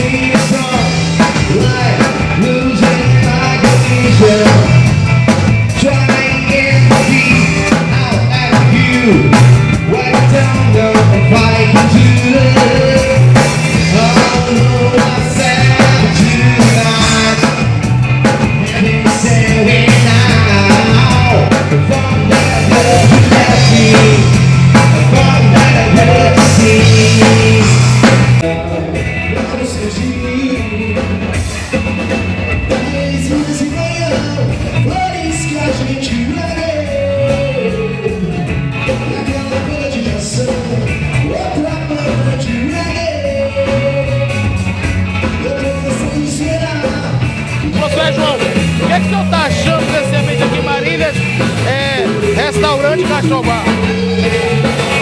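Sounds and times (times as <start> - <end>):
person singing: 0.0 - 5.0, 5.7 - 31.3, 45.4 - 55.0
drum kit: 0.0 - 55.0
live rock band playing: 0.0 - 55.0.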